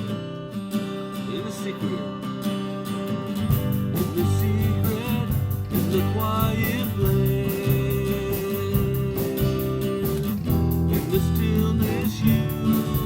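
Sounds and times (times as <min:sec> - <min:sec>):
strummed acoustic guitar: 0:00.0 - 0:13.0
steady beat: 0:03.4 - 0:13.0
sustained bass: 0:03.4 - 0:13.0.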